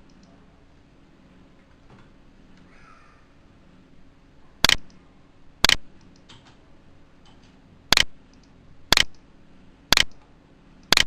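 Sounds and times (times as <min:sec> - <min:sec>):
computer mouse clicks: 0:04.6 - 0:05.0, 0:07.3 - 0:09.2, 0:09.9 - 0:11.0.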